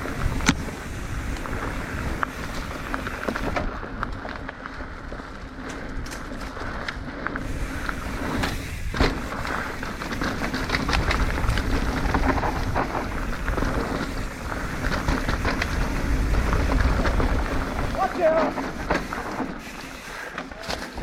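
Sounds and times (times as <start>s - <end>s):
wind rumbling on microphone: 0.0s - 19.7s
bike clicking and rattling: 0.0s - 21.0s
tyres crunching over dirt and rocks: 0.0s - 21.0s.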